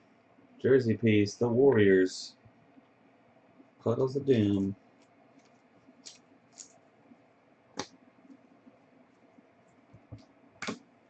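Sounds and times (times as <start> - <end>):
trading cards clicking and rustling: 4.4 - 6.8.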